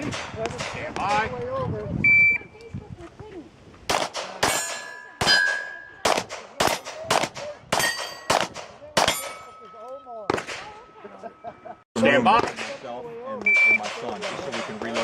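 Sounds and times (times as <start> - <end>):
pistol shots: 3.9 - 9.4, 10.3 - 10.8
metallic clang of steel plates: 4.4 - 6.0, 7.8 - 8.3.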